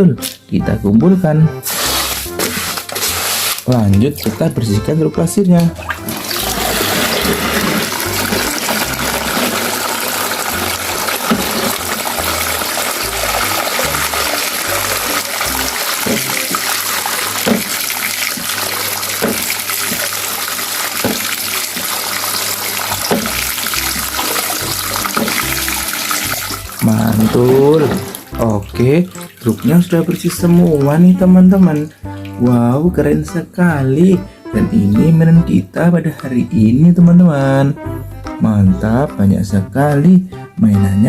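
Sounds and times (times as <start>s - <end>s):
running water splashing on plastic: 1.6s - 4.9s, 5.5s - 32.9s.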